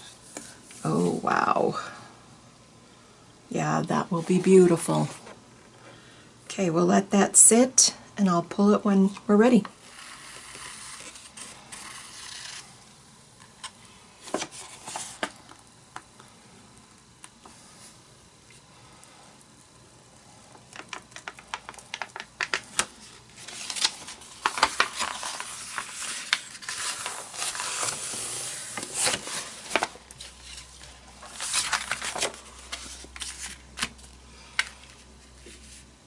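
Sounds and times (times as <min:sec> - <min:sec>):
paper rustling and crackling: 0:09.8 - 0:12.7, 0:13.6 - 0:15.6, 0:20.7 - 0:35.9.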